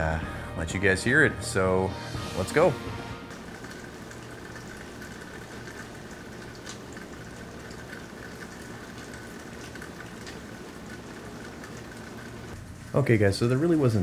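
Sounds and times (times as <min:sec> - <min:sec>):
air-conditioning units humming: 0:03.3 - 0:14.0
steady rain falling: 0:03.3 - 0:14.0.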